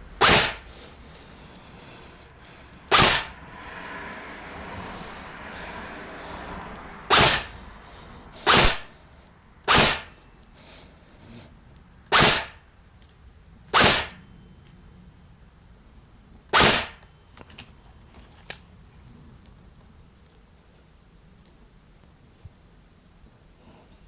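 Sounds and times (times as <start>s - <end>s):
airsoft gun shots: 0.2s - 0.6s, 2.9s - 3.4s, 7.1s - 7.6s, 8.5s - 8.9s, 9.7s - 10.2s, 12.1s - 12.6s, 13.8s - 14.2s, 16.6s - 17.0s.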